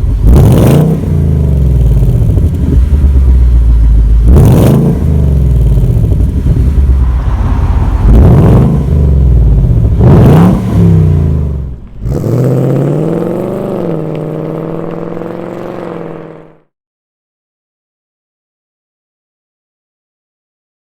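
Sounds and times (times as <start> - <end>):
car engine revving: 0.0 - 16.7.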